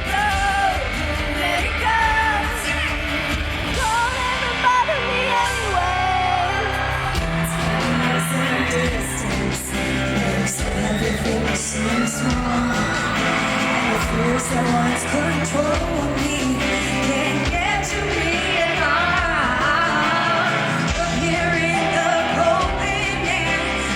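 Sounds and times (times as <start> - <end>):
person singing: 0.0 - 23.9
steady drum beat: 7.1 - 23.9.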